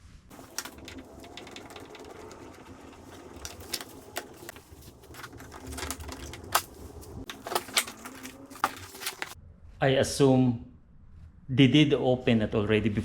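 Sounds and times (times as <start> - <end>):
hand tools and plastic parts clicking: 0.3 - 9.4.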